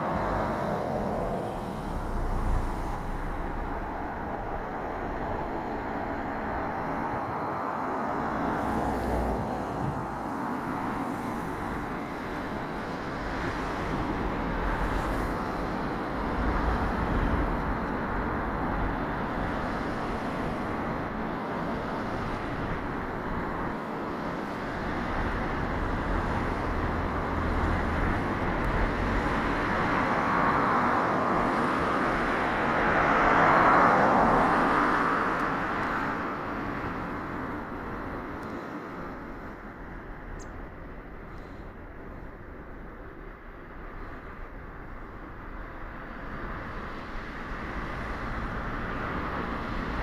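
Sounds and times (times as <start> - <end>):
vehicle passing: 0.0 - 6.5
road traffic noise: 0.0 - 50.0.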